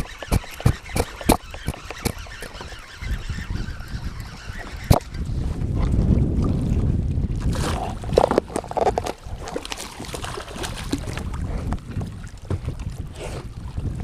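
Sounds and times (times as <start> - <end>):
gear knocks and clicks: 0.0 - 5.2, 8.1 - 10.1
short pitched calls: 0.0 - 5.2
wind rumbling on microphone: 0.0 - 14.0.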